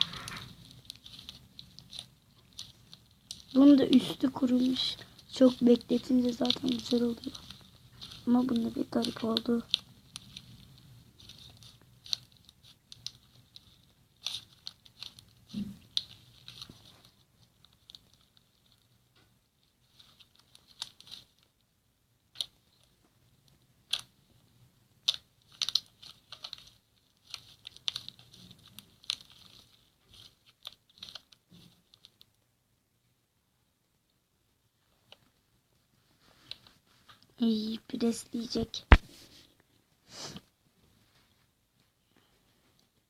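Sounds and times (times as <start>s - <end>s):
slime crackling and clicking: 0.0s - 16.9s, 23.9s - 24.1s, 25.0s - 32.3s.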